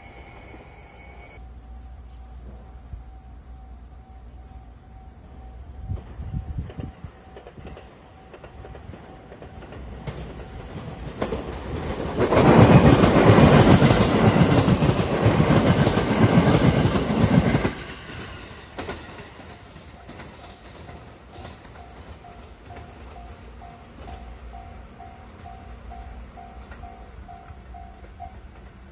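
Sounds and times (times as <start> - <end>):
level crossing warning bell: 0.0 - 9.4, 19.5 - 28.7
electric train passing: 0.0 - 28.9
train wheels clattering: 5.8 - 28.9.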